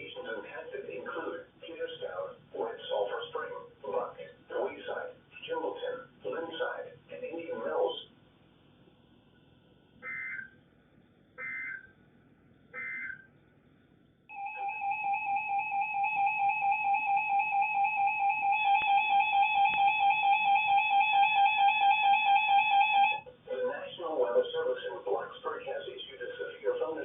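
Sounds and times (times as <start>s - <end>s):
steady attention tone: 10.0s - 10.8s, 11.4s - 12.1s, 12.7s - 13.5s, 14.3s - 27.0s.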